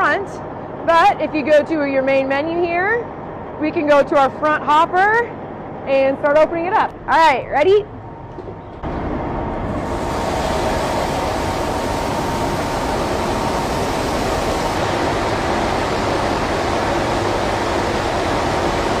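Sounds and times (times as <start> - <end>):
faint hum: 0.0 - 19.0
grain pouring with rushing hiss: 9.8 - 19.0.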